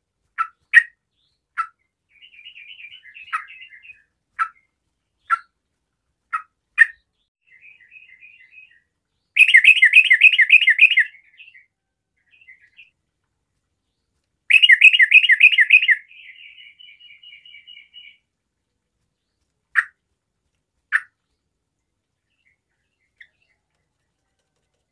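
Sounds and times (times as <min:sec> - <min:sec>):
bird singing: 0:00.7 - 0:05.5, 0:06.8 - 0:13.0, 0:13.8 - 0:18.2.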